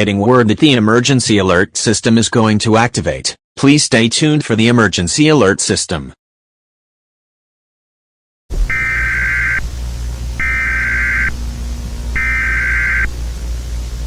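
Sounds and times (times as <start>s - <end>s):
low hum: 8.5s - 14.0s
high digital data tones: 8.7s - 9.7s, 10.4s - 11.4s, 12.2s - 13.1s
steady hiss: 8.7s - 14.0s.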